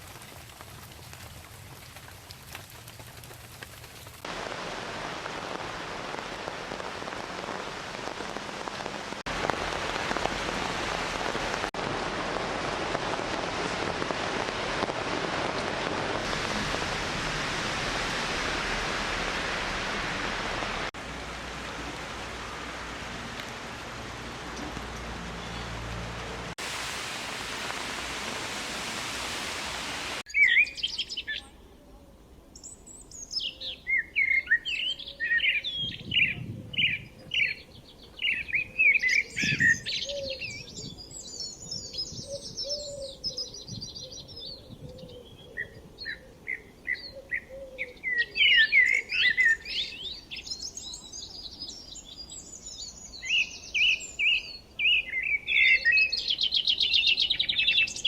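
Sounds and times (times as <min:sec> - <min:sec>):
steady rain hiss: 0:00.0 - 0:30.3
songbirds chirping and trilling: 0:30.3 - 0:58.0.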